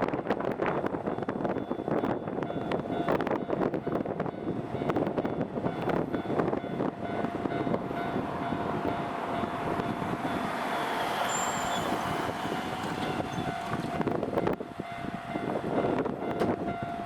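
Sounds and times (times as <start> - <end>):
high squeal: 10.3 - 13.7.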